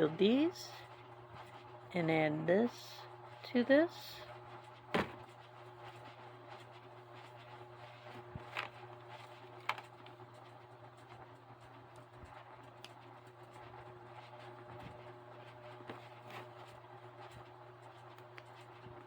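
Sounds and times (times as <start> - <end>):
faint room hum: 0.0 - 19.0.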